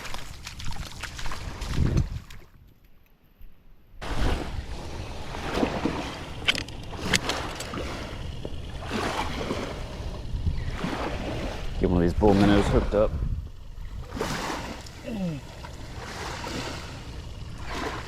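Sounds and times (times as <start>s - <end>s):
wind buffeting microphone: 0.0s - 2.7s, 4.0s - 18.0s
water splashing and lapping: 0.0s - 3.2s, 4.0s - 18.0s
sharp clicks: 6.4s - 7.8s.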